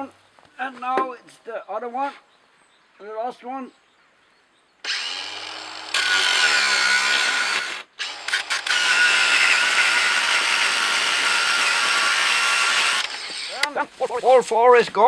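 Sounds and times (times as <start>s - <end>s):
power cutting tool cutting metal: 4.9s - 13.7s.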